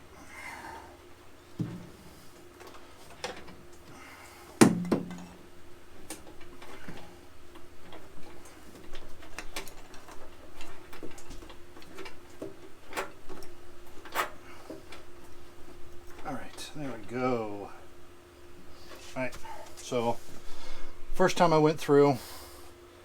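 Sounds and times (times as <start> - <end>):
sharp knock: 4.6 - 5.2.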